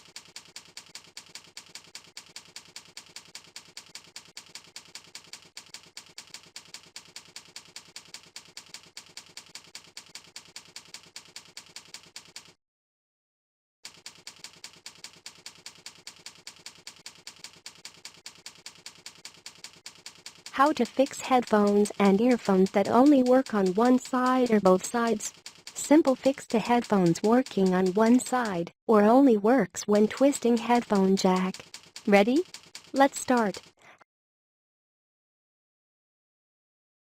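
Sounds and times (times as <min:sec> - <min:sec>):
keyboard typing clicks: 0:00.0 - 0:12.6, 0:13.9 - 0:28.7, 0:29.8 - 0:33.8.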